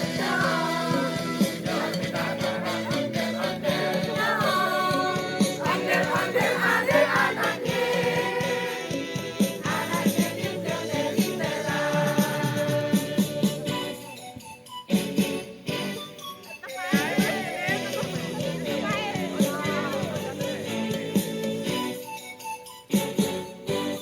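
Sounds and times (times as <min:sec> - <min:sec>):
choir singing: 0:00.0 - 0:13.9
background music: 0:00.0 - 0:24.0.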